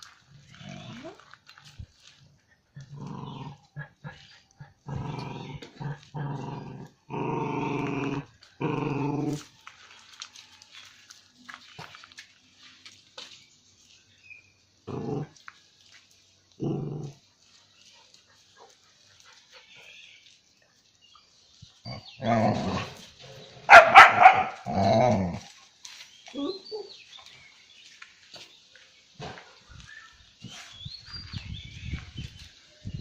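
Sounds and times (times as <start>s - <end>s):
dog growling and barking: 2.8s - 9.5s, 14.8s - 15.4s, 16.6s - 17.2s, 21.9s - 25.5s.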